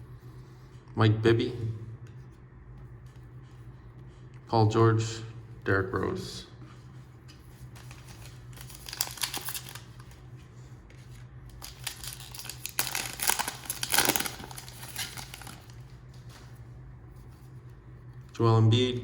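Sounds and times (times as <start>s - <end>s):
low steady hum: 0.0s - 19.0s
plastic wrapper tearing and crinkling: 7.8s - 10.2s, 11.5s - 15.9s.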